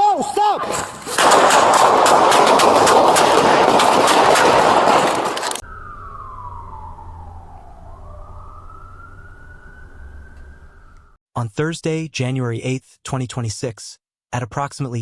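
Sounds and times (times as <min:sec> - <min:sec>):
gunfire cracks: 0:00.6 - 0:05.6
low hum: 0:05.6 - 0:11.2
siren wailing: 0:05.6 - 0:11.2.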